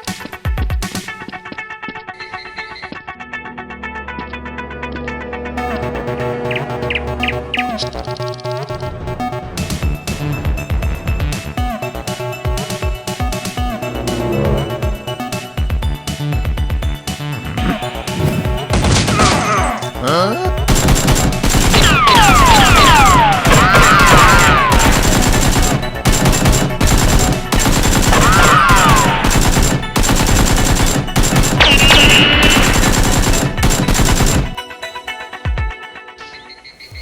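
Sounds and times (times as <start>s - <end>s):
background music: 0.0s - 37.0s
machine-gun fire: 20.7s - 34.6s.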